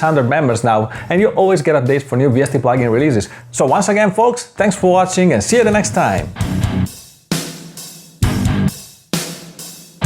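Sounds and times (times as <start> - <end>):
heavy metal guitar and drums: 4.8 - 7.1, 8.2 - 8.8.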